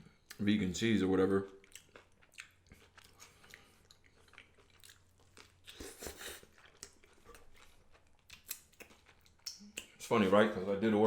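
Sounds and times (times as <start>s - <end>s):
mouth chewing wet smacks: 1.5s - 10.1s.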